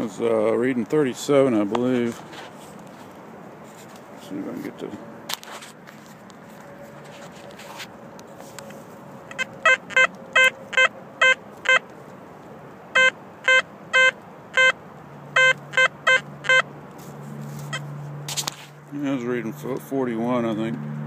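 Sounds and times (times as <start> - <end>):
metal detector short beeps: 9.3 - 11.8, 13.0 - 14.8, 15.4 - 16.6.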